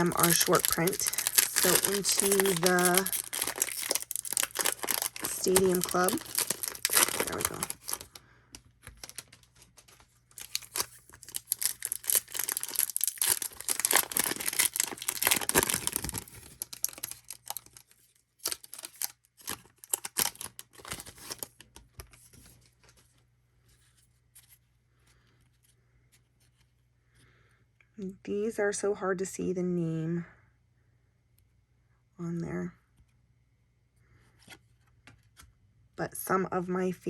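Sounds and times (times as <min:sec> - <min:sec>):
foil wrapper tearing and crinkling: 0:00.0 - 0:08.2, 0:08.8 - 0:09.4, 0:10.4 - 0:21.6.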